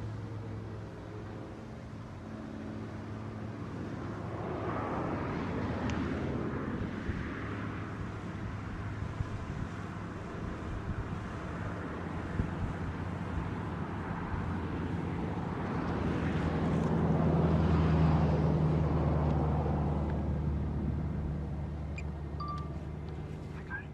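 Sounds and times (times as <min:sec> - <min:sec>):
vehicle passing by: 0:10.6 - 0:23.9.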